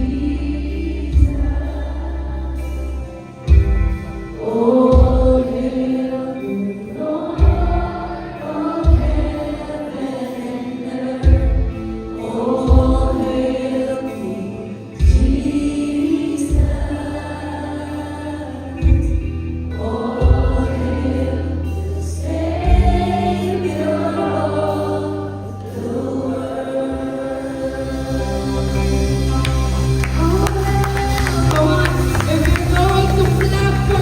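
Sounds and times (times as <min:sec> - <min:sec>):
group of voices singing: 0:00.0 - 0:34.0
deep bass notes: 0:27.6 - 0:34.0.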